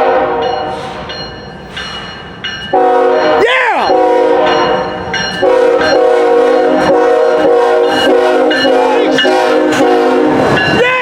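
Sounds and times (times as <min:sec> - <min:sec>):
locomotive air horn blowing: 0:00.0 - 0:00.8, 0:02.7 - 0:10.6.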